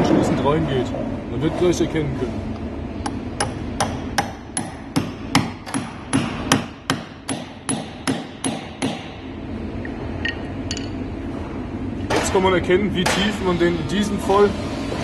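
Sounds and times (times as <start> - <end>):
hammer tapping steel punch: 3.0 - 9.1.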